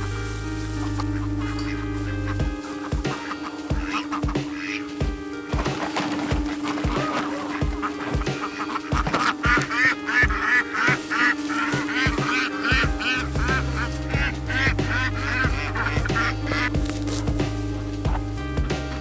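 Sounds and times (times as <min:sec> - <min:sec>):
low bass line: 0:00.0 - 0:02.7, 0:12.8 - 0:19.0
music with steady beat: 0:00.0 - 0:19.0.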